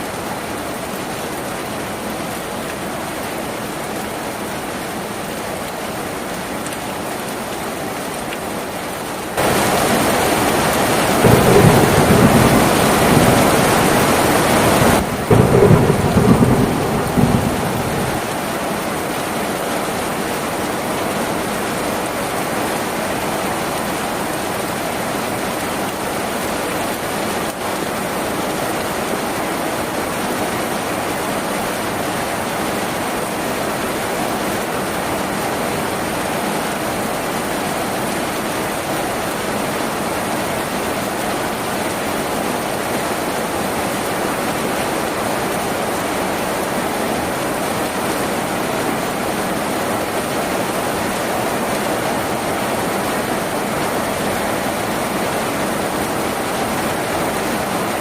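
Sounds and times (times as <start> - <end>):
heavy rain on a tin roof: 0.0 - 58.0
thunder rumbling: 9.4 - 18.4.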